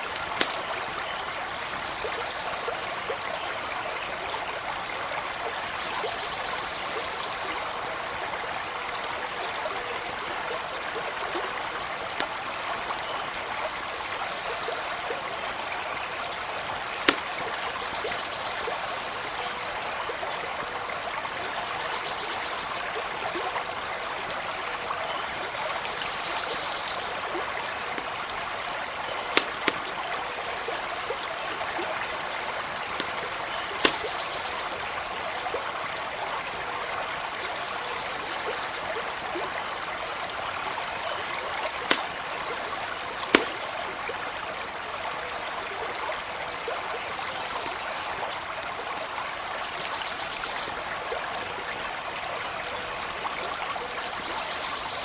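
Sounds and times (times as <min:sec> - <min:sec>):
campfire pops and crackles: 0:00.0 - 0:01.0, 0:06.0 - 0:13.5, 0:16.3 - 0:21.3, 0:26.4 - 0:36.9, 0:40.7 - 0:44.5
stream running: 0:00.0 - 0:55.0.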